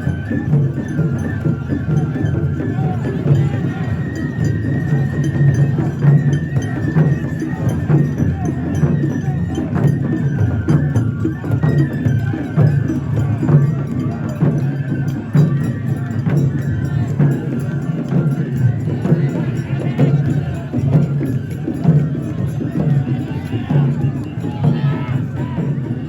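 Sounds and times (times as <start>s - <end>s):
clacking ringing percussion: 0.0s - 26.0s
crowd of voices: 0.0s - 26.0s
low drum beat: 11.9s - 26.0s.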